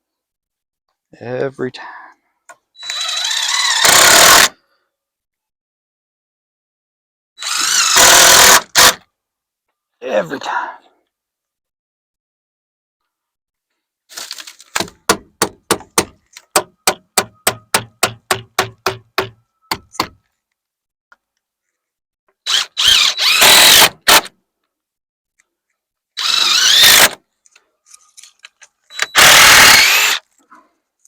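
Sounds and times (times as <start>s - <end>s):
power drill driving screws: 2.8s - 4.6s, 7.4s - 9.0s, 22.5s - 24.3s, 26.2s - 27.2s, 28.9s - 30.2s
hammer driving nail into wood: 14.8s - 20.2s.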